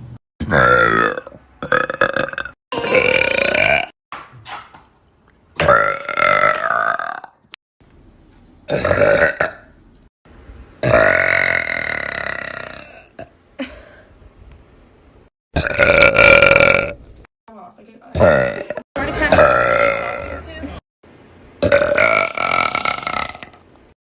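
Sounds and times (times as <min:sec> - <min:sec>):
woman burping: 0:00.4 - 0:03.9, 0:15.6 - 0:17.0, 0:18.1 - 0:20.4.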